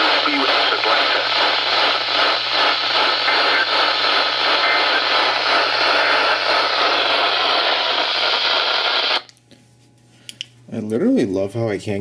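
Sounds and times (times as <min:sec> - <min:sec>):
radio static hiss: 0:00.0 - 0:09.3.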